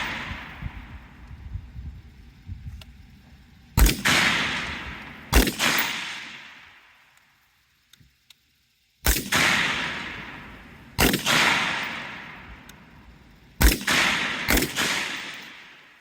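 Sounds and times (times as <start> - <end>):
rifle shots with rolling echo: 0.0 - 1.3, 3.7 - 7.2, 9.0 - 16.0.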